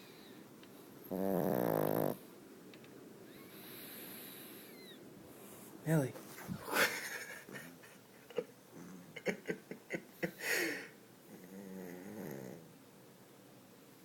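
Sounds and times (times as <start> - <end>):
dog snoring and snorting: 1.0 - 2.2, 11.2 - 12.8.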